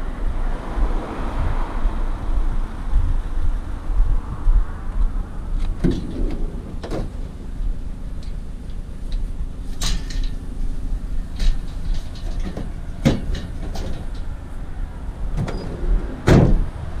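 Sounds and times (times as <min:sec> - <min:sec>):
vehicle engine rumble: 0:00.0 - 0:17.0
scrap metal clanking: 0:09.6 - 0:14.3.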